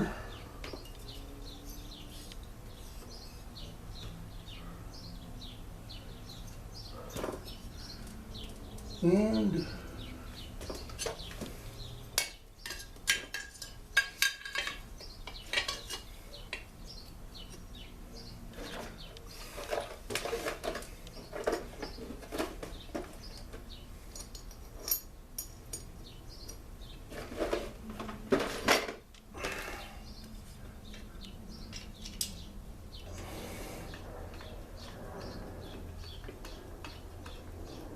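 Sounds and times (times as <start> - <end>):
metal parts and tools clinking: 0.6 - 3.4, 10.0 - 11.4, 12.2 - 16.7, 18.6 - 29.6.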